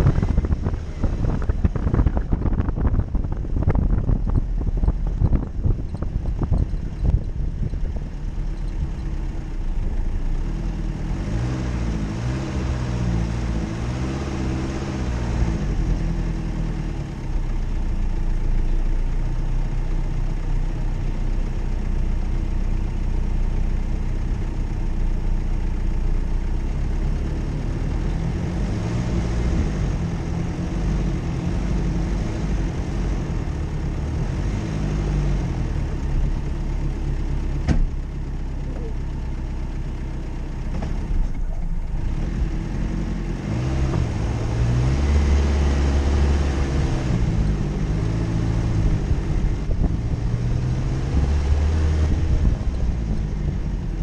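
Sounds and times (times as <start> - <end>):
car engine revving: 0.0 - 17.2, 26.6 - 39.0, 40.6 - 54.0.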